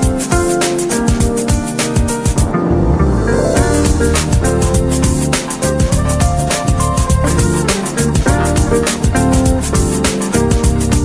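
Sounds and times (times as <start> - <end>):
music with drums and guitar: 0.0 - 11.0.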